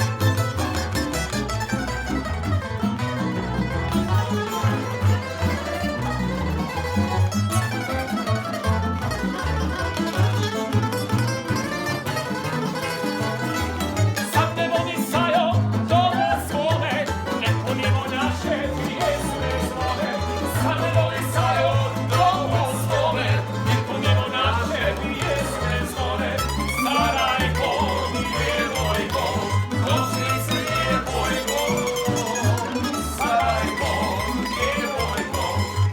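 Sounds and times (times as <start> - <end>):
steady bass line: 0.0 - 10.9, 13.3 - 35.9
plucked string ensemble playing: 0.0 - 35.9.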